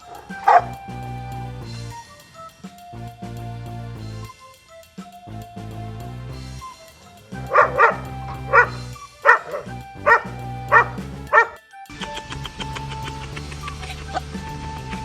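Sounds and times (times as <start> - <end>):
dog barking: 0.0 - 0.8, 7.4 - 11.6
background music: 0.0 - 15.0.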